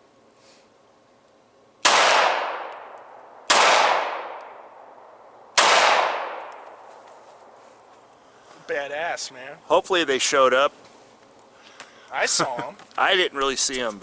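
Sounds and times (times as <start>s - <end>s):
gunshots: 1.8s - 2.9s, 3.5s - 4.6s, 5.6s - 6.6s
gunshot echo: 1.8s - 4.9s, 5.6s - 6.7s.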